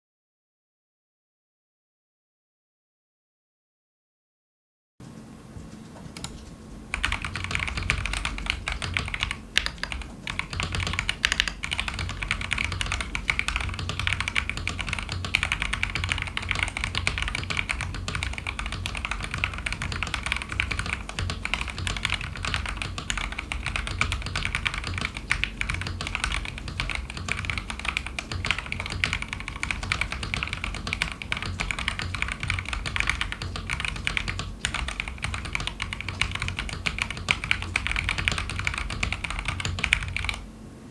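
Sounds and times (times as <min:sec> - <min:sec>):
fast typing on mechanical keyboard: 0:06.2 - 0:40.4.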